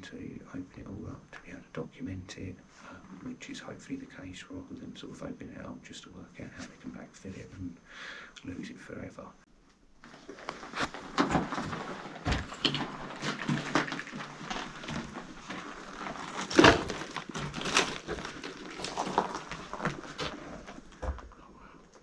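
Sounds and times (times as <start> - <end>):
footsteps crunching on rubble: 10.0 - 22.0.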